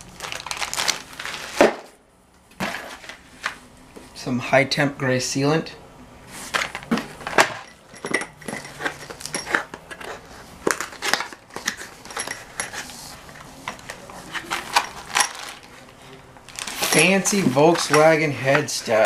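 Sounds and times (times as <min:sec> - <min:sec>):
packaging crinkling and rustling: 0:00.0 - 0:01.9, 0:06.4 - 0:19.0.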